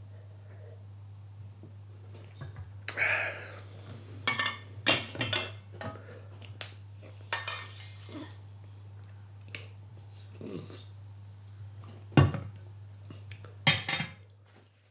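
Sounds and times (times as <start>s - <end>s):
plates and cutlery clinking: 4.3s - 6.0s, 7.3s - 8.4s, 13.7s - 14.2s.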